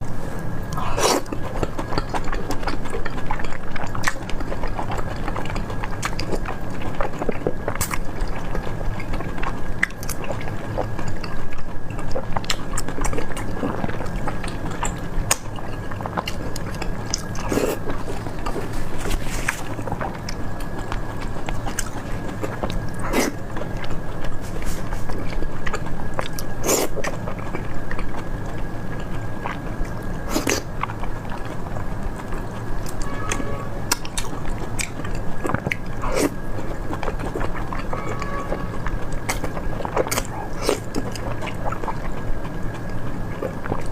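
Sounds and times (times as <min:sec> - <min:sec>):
steady low hum: 0:00.0 - 0:43.9
crunchy chewing clicks: 0:00.4 - 0:43.9
thin high steady tone: 0:32.9 - 0:34.6, 0:37.8 - 0:39.1.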